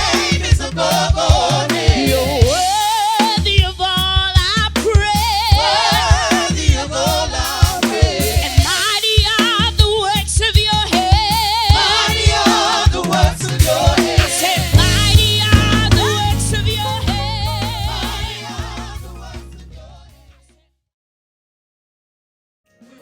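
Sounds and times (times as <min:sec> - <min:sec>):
bass: 0:00.0 - 0:07.8, 0:08.4 - 0:20.7
steady drum beat: 0:00.0 - 0:19.9
person singing with vibrato: 0:11.3 - 0:20.4.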